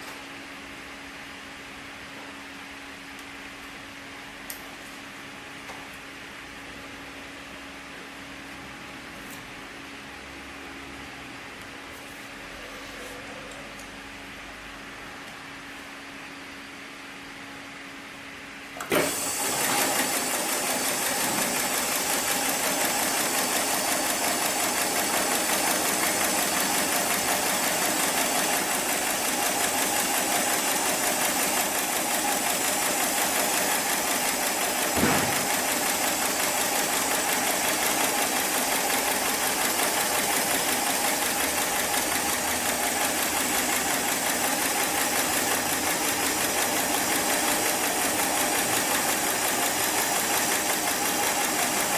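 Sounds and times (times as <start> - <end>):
sewing machine clatter: 18.8 - 51.9
sewing machine clunk: 34.9 - 35.8.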